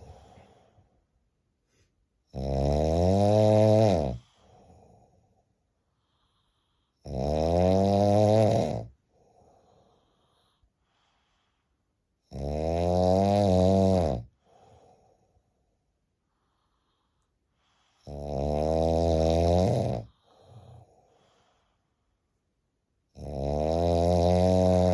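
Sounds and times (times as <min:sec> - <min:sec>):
faint breath: 0:00.0 - 0:02.1, 0:04.2 - 0:07.1, 0:09.0 - 0:12.1, 0:14.3 - 0:18.2, 0:20.0 - 0:22.2
person snoring with rasp: 0:02.3 - 0:04.4, 0:07.0 - 0:09.0, 0:12.3 - 0:14.4, 0:18.0 - 0:21.0, 0:23.2 - 0:24.9.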